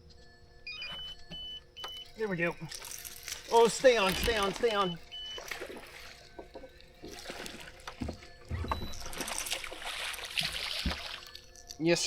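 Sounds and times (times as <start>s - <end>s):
water splashing: 3.5s - 11.4s.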